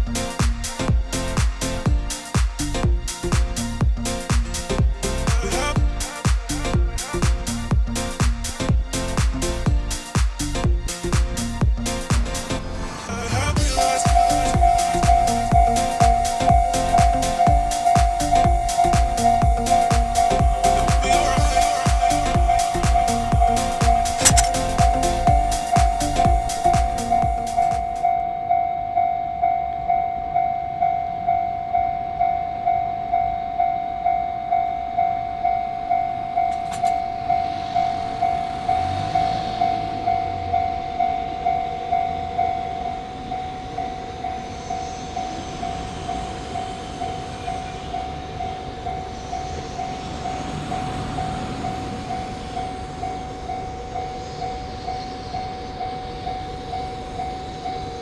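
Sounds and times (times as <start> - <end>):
electric train passing: 0.0 - 58.0
level crossing warning bell: 13.6 - 58.0.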